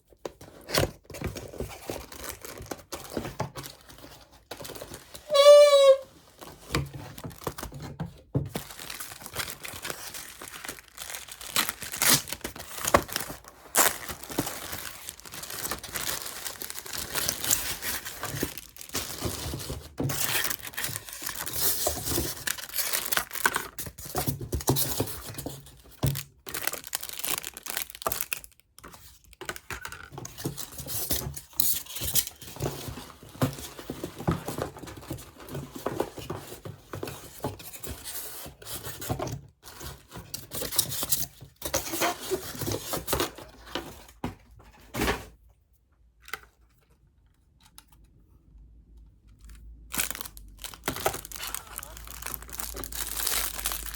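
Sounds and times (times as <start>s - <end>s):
paper and plastic crinkling: 0.1s - 45.3s, 49.3s - 53.9s.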